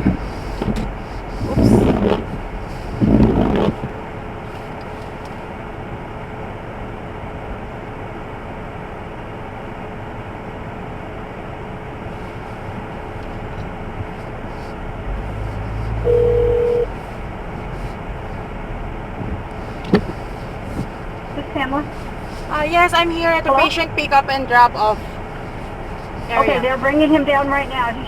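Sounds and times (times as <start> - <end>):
car idling: 0.0 - 28.0
phone ringing through car speakers: 16.0 - 16.9.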